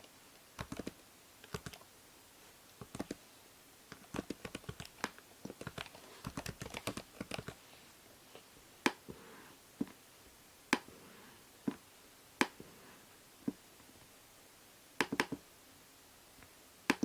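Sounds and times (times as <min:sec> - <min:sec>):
faint microphone hiss: 0:00.0 - 0:17.0
typing on a keyboard: 0:00.6 - 0:01.8, 0:02.8 - 0:03.2, 0:03.9 - 0:07.6.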